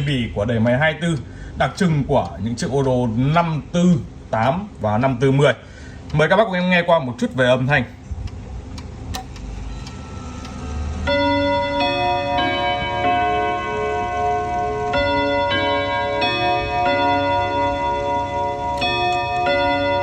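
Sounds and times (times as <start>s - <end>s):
clock chiming on rod gong: 0.0s - 5.5s, 9.6s - 20.0s.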